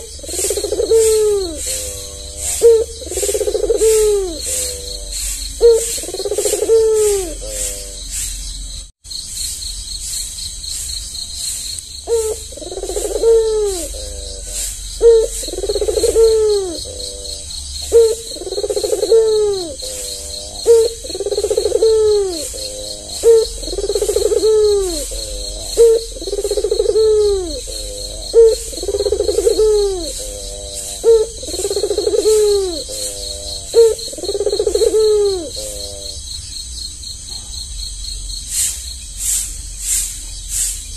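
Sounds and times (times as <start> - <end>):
dove cooing: 0.0 - 8.2, 12.1 - 36.2
insects chirring: 0.0 - 40.9.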